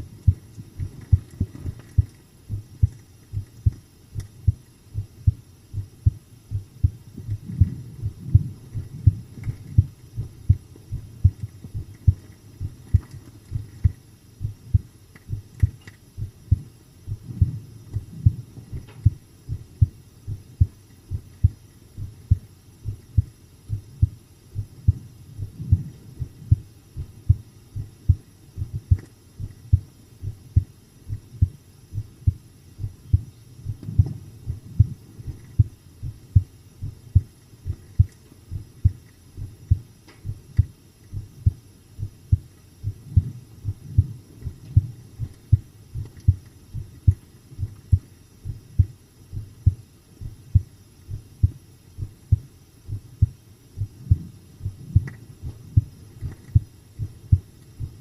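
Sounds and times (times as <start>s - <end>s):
heart beating: 0.0s - 58.0s.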